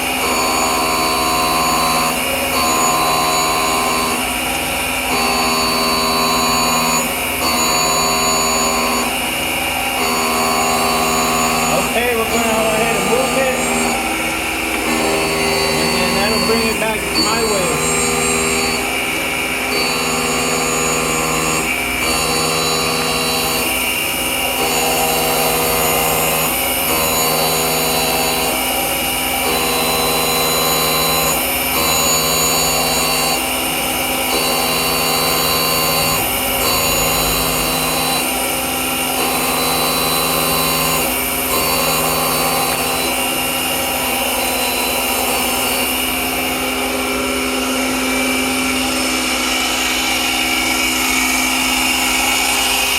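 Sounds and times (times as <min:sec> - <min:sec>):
surface grinder humming: 0:05.1 - 0:23.9.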